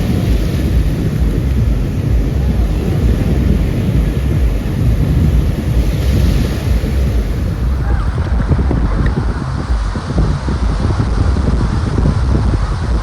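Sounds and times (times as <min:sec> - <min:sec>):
ocean surf: 0:00.0 - 0:13.0
wind buffeting microphone: 0:00.0 - 0:13.0.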